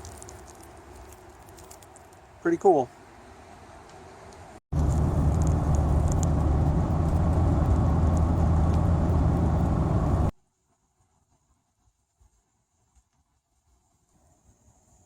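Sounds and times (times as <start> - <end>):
car road and engine noise: 3.2 - 10.4.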